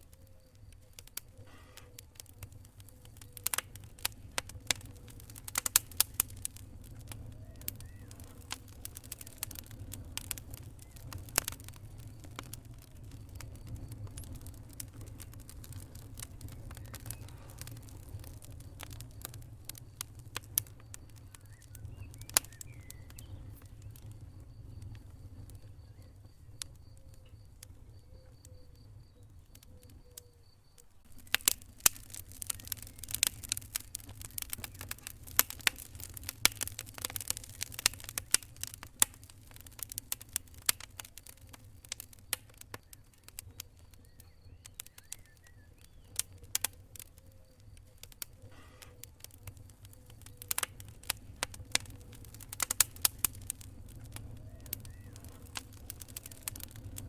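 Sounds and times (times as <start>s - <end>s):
low rumble of flames: 0.0s - 57.0s
wood fire crackling and popping: 0.0s - 57.0s.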